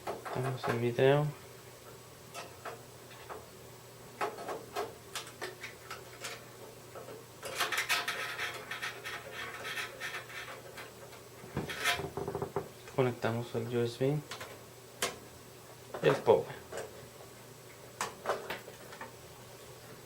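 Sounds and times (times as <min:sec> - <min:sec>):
rustling and scraping: 0:04.2 - 0:12.5.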